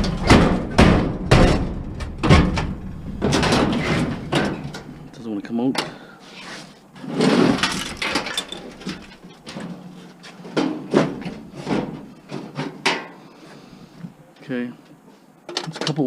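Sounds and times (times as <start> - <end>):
metal knocks: 0.0 - 5.1
metal scraping: 6.3 - 10.4.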